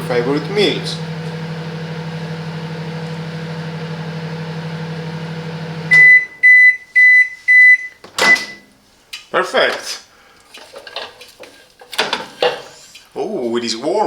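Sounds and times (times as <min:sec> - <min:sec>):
microwave oven humming: 0:00.0 - 0:06.4
high beeps: 0:05.9 - 0:08.6.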